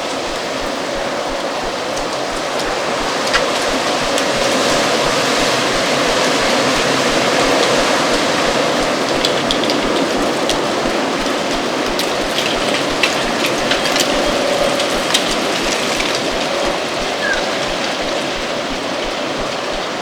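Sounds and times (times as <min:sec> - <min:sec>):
dry leaves skittering on ground: 0:00.0 - 0:19.8
wind blowing: 0:00.0 - 0:20.0.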